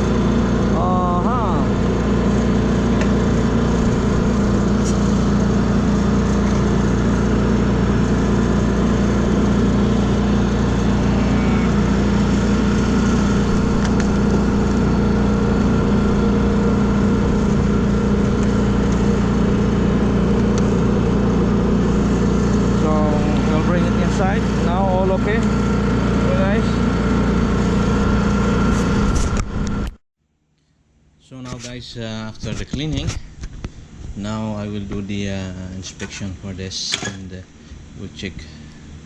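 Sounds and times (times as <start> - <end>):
machine drone with low hum: 0.0 - 30.0, 30.6 - 39.0.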